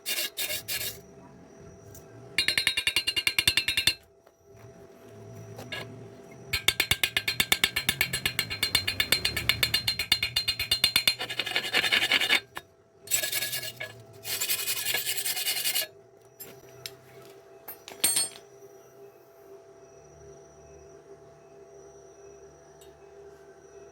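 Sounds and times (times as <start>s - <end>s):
hand tool rasping on steel: 0.0s - 1.0s, 6.6s - 15.9s.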